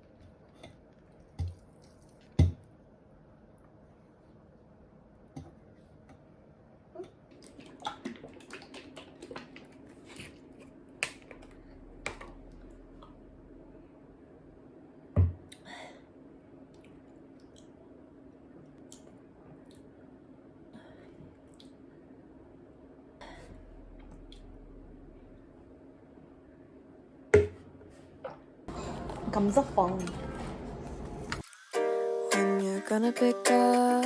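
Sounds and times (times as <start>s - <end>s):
steady low hum: 10.5s - 31.4s.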